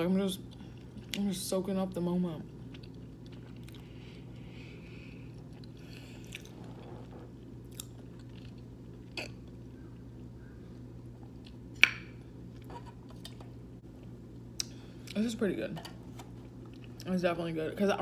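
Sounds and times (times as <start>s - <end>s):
steady low hum: 0.0s - 18.0s
person chewing food: 2.5s - 11.7s, 16.4s - 17.0s.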